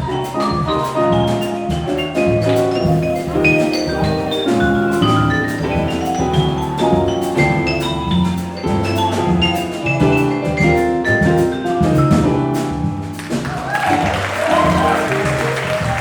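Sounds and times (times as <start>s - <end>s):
bass: 0.0s - 16.0s
drums with cymbals: 0.0s - 16.0s
vibraphone runs: 2.8s - 11.4s.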